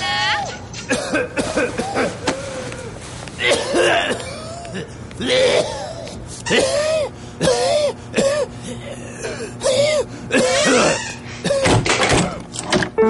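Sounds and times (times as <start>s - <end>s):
person coughing and wheezing: 0.8s - 2.6s, 3.4s - 12.0s.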